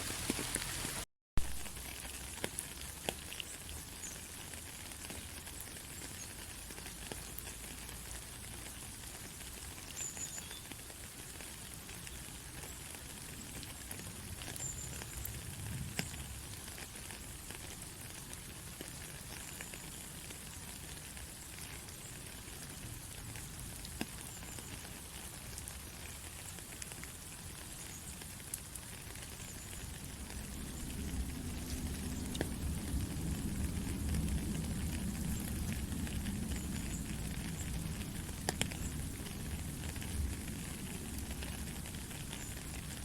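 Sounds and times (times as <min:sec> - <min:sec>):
steady rainfall: 0:00.0 - 0:43.0
low rumble: 0:30.0 - 0:41.2.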